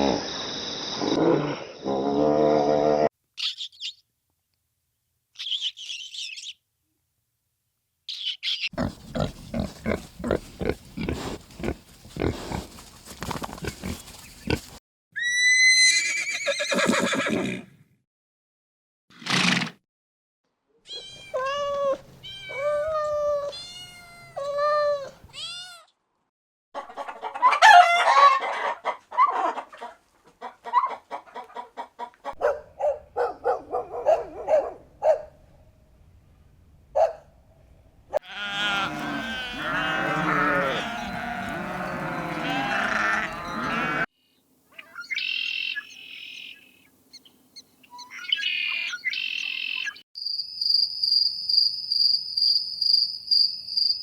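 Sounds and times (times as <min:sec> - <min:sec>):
chickens clucking: 0:26.8 - 0:32.4
rooster crowing: 0:27.4 - 0:28.8
high chirping: 0:44.8 - 0:50.4.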